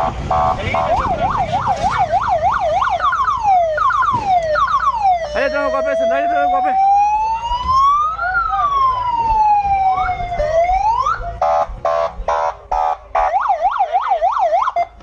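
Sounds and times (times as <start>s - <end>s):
vehicle horn blasts: 0.0s - 1.2s
low vehicle rumble: 0.0s - 15.0s
police siren wailing and yelping: 0.0s - 15.0s.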